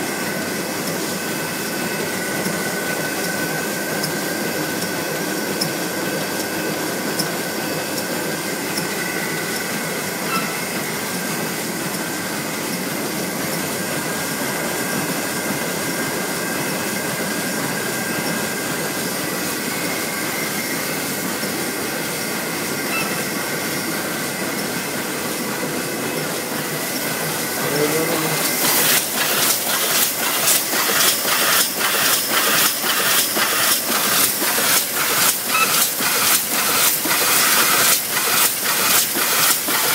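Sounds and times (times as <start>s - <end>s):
sewing machine humming: 20.8s - 39.9s
rhythmic machine clatter: 26.3s - 39.9s.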